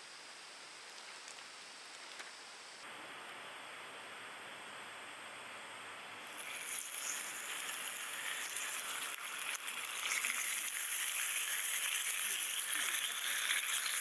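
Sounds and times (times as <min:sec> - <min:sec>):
soft steady hiss: 0:00.0 - 0:14.0
food sizzling in a pan: 0:06.2 - 0:14.0.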